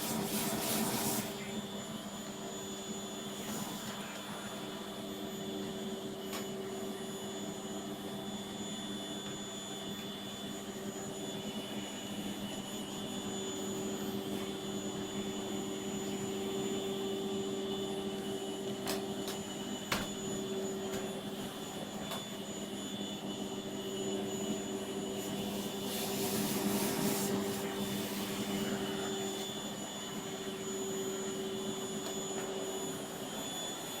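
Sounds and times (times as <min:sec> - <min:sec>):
vacuum cleaner running: 0:00.0 - 0:34.0.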